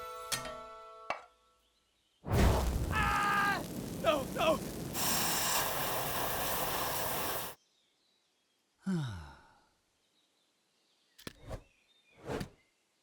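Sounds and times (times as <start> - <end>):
cartoon rushing noise: 2.3 - 6.8.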